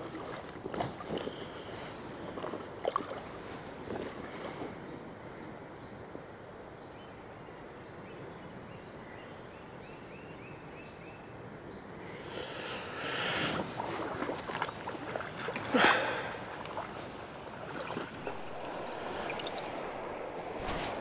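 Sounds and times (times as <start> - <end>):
river rushing: 15.5 - 21.0.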